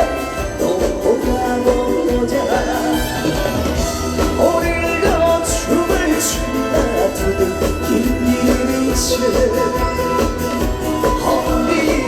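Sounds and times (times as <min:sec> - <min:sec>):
live band playing trot song: 0:00.0 - 0:12.0.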